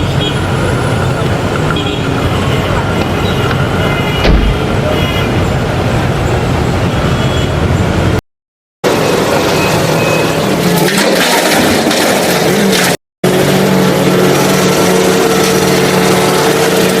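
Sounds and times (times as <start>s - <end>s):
rough noisy engine: 0.0s - 8.2s, 8.8s - 17.0s
steady engine hum: 0.0s - 8.2s, 13.2s - 17.0s.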